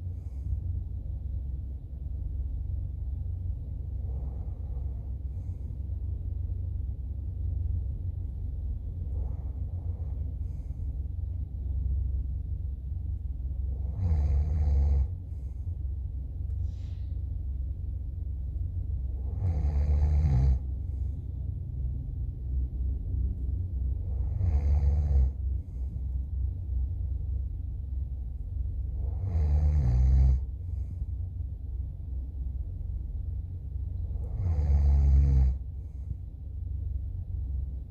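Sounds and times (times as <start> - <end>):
steady low rumble: 0.0 - 37.9
person snoring: 13.8 - 15.1, 19.2 - 20.7, 24.1 - 25.4.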